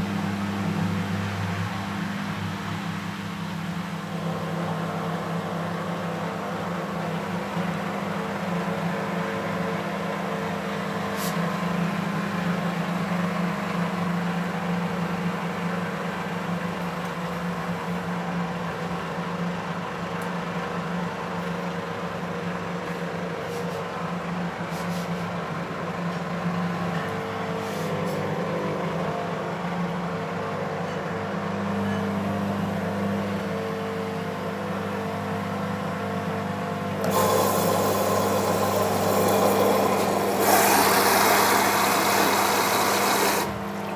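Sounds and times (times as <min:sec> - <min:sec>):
washing machine drum humming: 0:36.8 - 0:43.9.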